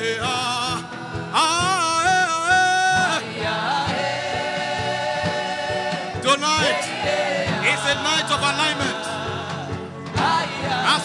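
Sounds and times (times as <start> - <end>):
sustained keyboard chords: 0.0 - 11.0
steady beat: 0.2 - 11.0.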